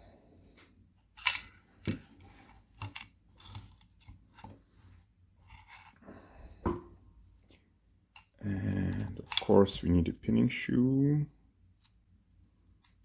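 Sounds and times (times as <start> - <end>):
metal tools clicking and clinking: 1.2 - 2.0, 8.2 - 9.8.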